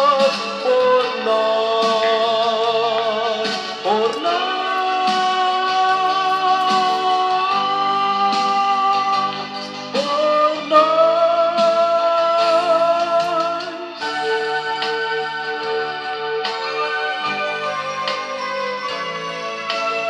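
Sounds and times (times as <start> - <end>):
backing band: 0.2 - 17.2
held melody notes: 2.2 - 8.6.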